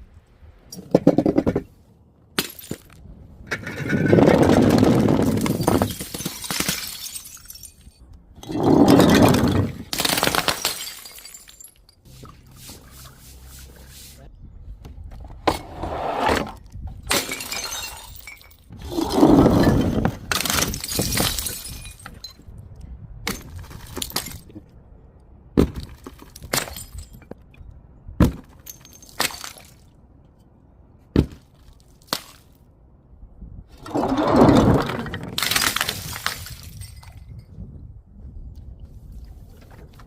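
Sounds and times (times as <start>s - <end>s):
glass bottles crashing: 3.9s - 12.0s, 17.1s - 22.4s, 33.8s - 37.3s
glass pieces clinking: 10.4s - 12.0s.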